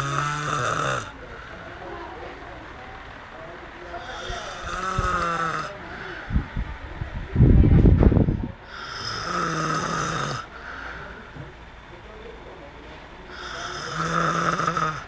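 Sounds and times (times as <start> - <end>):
person snoring heavily: 0.0 - 1.3, 4.0 - 6.3, 8.6 - 10.8, 13.3 - 15.0.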